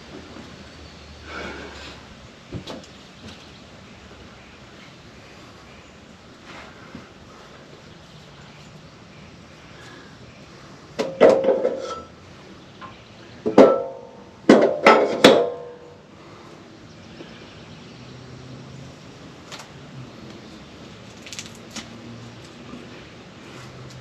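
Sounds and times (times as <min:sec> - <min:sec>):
sharp ringing knocks: 0:12.8 - 0:15.8.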